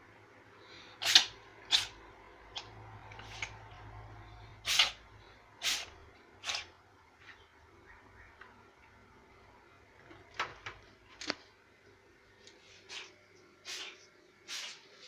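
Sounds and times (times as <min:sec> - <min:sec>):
cat sneezing: 0:01.0 - 0:02.0, 0:04.6 - 0:05.0, 0:05.6 - 0:06.7, 0:13.7 - 0:14.9.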